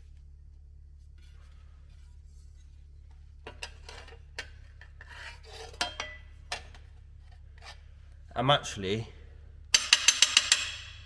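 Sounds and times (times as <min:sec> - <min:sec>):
steady low hum: 0:00.0 - 0:11.0
metal clinking and scraping: 0:01.2 - 0:07.9.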